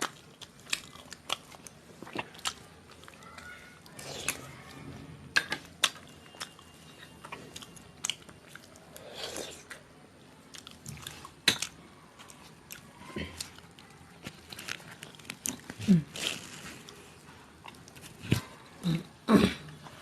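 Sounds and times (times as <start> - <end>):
chewing and mouth sounds: 0.0 - 4.7, 5.4 - 18.6.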